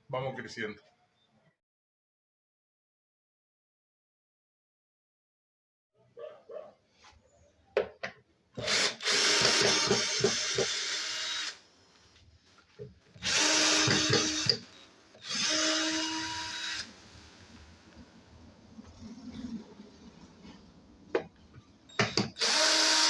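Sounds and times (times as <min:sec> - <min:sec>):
power drill running: 0:08.6 - 0:11.6, 0:13.2 - 0:17.5, 0:21.9 - 0:23.0.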